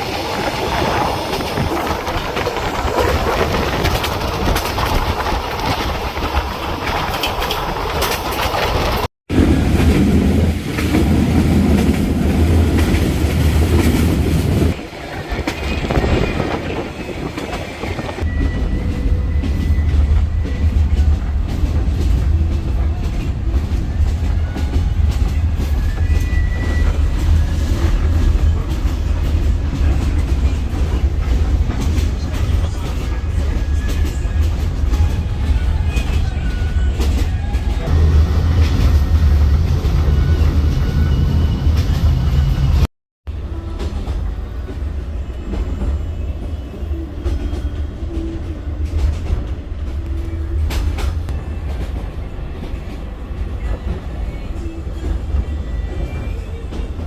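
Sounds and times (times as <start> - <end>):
wheels clickety-clack: 0.0 - 9.1, 18.9 - 38.0, 47.2 - 53.0
train rumbling on rails: 0.0 - 57.0.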